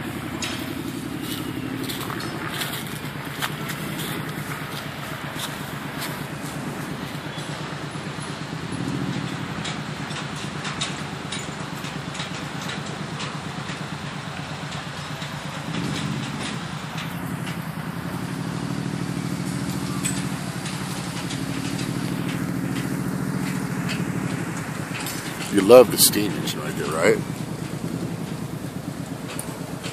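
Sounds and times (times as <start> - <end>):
small engine pulsing hum: 0.0 - 29.9
light ticks: 19.4 - 29.9.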